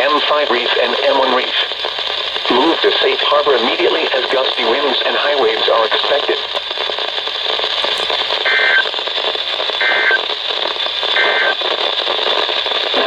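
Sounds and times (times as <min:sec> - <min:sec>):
steady radio hiss: 0:00.0 - 0:13.0
two-tone digital data bursts: 0:07.8 - 0:08.9.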